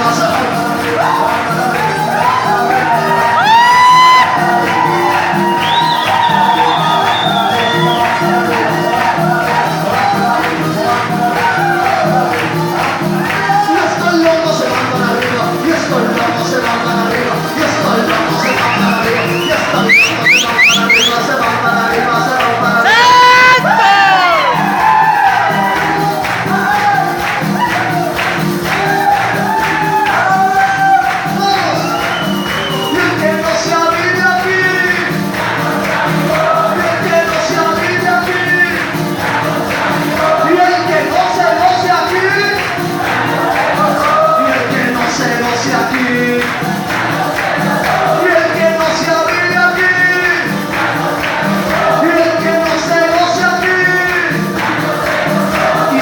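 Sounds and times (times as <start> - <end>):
congregation voices and shouts: 0.0 - 56.0
live band music: 0.0 - 56.0
rising held cry: 0.8 - 10.4, 22.8 - 31.3.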